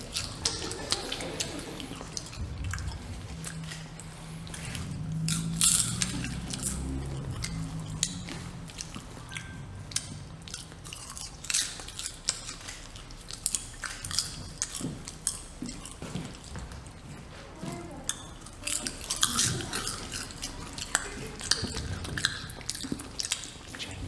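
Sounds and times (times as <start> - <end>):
low hum: 0.0 - 12.6
crunching and crackling clicks: 0.0 - 24.0.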